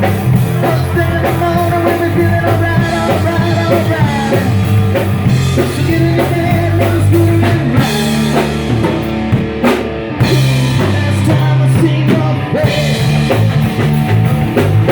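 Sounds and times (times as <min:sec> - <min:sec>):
rock band playing: 0:00.0 - 0:14.9
person singing: 0:00.5 - 0:04.7, 0:05.5 - 0:08.6, 0:10.2 - 0:13.6.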